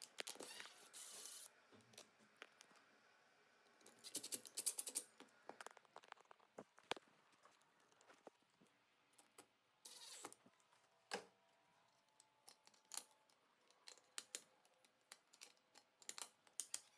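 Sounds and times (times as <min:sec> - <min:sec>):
faint clicks and taps: 0:04.2 - 0:09.5.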